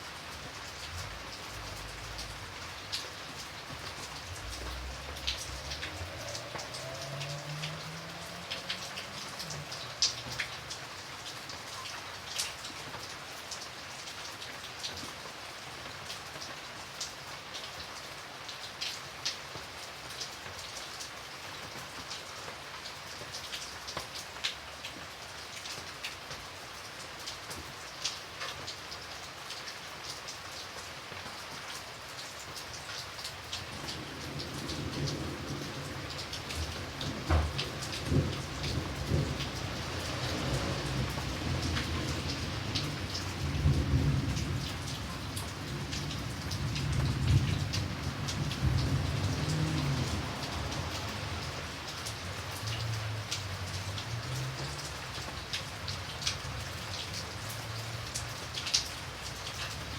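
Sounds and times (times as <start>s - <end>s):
raindrops ticking close by: 0.0s - 59.9s
steady rain: 0.0s - 59.9s
thunder rumbling: 0.8s - 10.8s, 33.8s - 51.8s.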